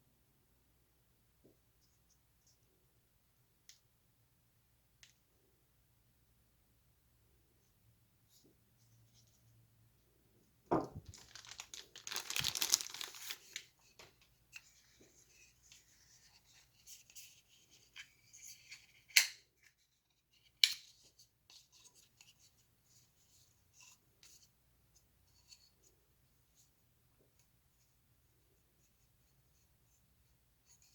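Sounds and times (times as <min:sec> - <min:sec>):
packaging rustling: 0:10.9 - 0:14.1
packaging tearing: 0:11.0 - 0:13.6.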